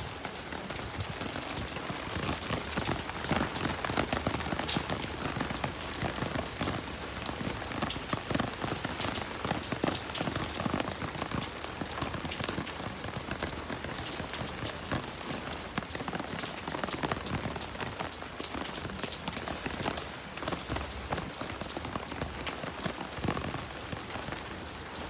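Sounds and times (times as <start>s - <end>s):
hiss of downpour: 0.0s - 25.0s
raindrops pattering and splashing: 0.0s - 25.0s.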